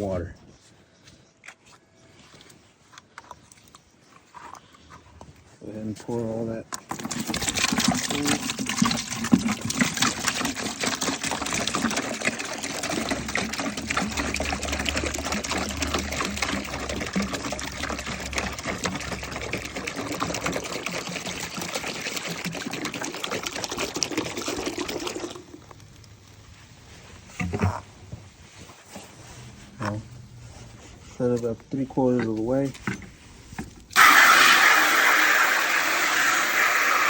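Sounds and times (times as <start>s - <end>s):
liquid pouring into a bucket: 6.7s - 26.2s, 33.9s - 37.0s.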